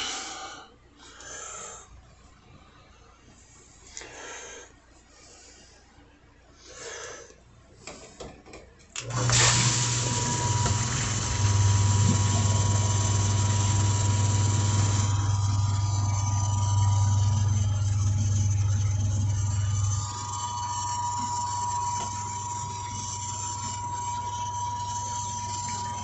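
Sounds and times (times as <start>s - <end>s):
pump motor humming: 9.0s - 26.0s.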